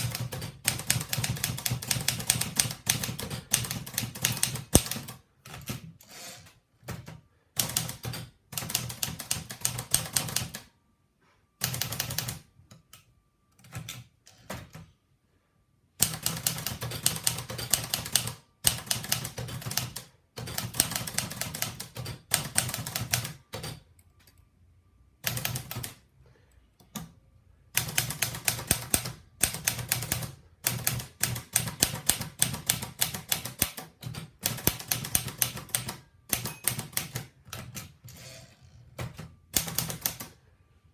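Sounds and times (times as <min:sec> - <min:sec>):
typewriter key strikes: 0:00.0 - 0:05.8, 0:27.8 - 0:37.8.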